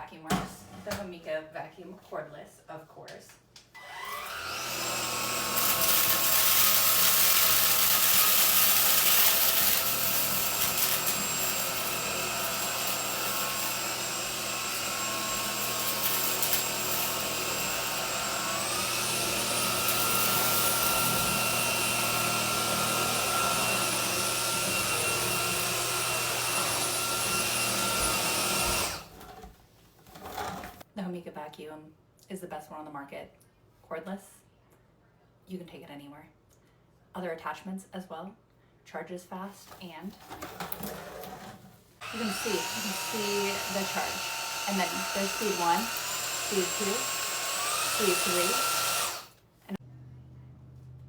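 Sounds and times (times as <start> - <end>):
vacuum cleaner whining: 3.8 - 29.5, 30.1 - 30.8, 40.2 - 49.5.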